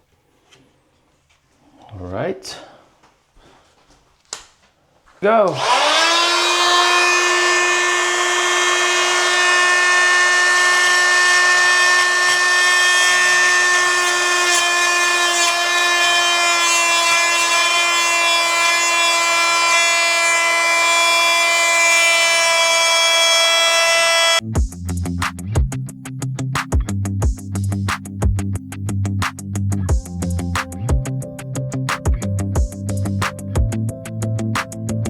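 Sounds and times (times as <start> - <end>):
oscillating multi-tool whining: 5.6 - 24.4.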